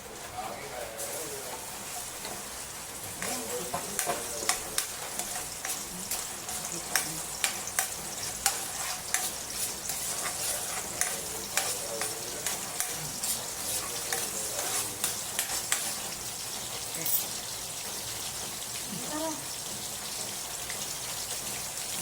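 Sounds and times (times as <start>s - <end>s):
food sizzling in oil: 0.0s - 22.0s
utensil striking pan: 3.0s - 17.4s.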